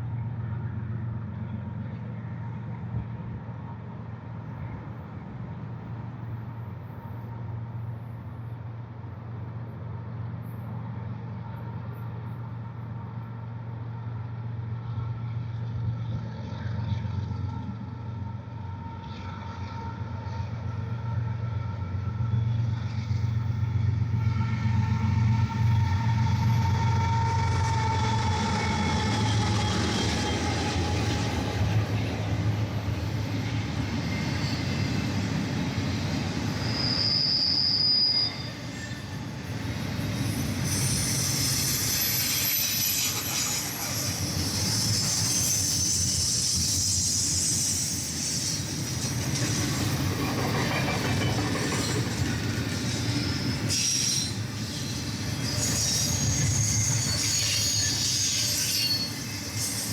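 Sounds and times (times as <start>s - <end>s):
freight train wheels rumbling: 0.0s - 59.9s
high-pitched wheel squeal: 24.2s - 59.9s.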